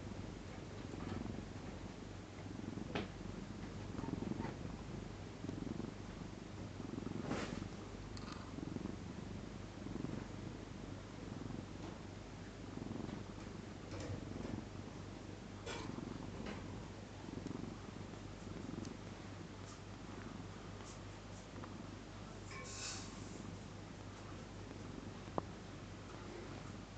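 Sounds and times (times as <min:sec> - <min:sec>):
cat snoring: 0:02.4 - 0:10.6, 0:11.2 - 0:11.8, 0:12.6 - 0:14.9, 0:15.6 - 0:19.0, 0:19.6 - 0:23.7.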